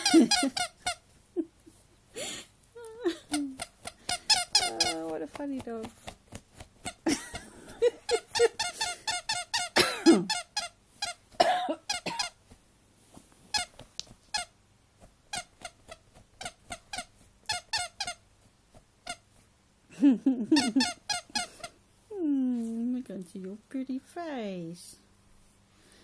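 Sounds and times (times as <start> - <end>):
dog claws scratching at sheet: 3.6 - 7.0.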